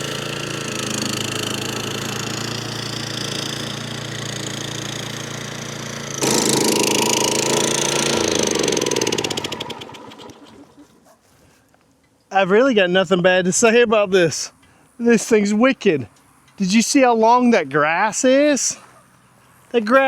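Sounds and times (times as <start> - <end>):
lawn mower engine running: 0.0 - 11.0.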